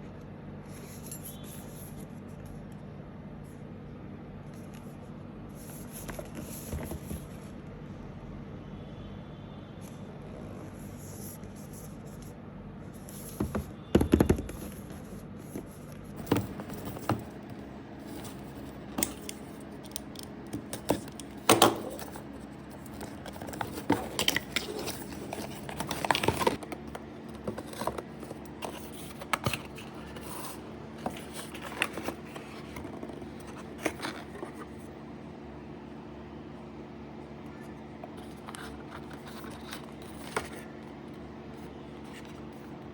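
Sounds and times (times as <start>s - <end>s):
hands handling packaging: 13.2s - 35.0s, 38.0s - 42.7s
packaging knocks: 16.2s - 30.3s.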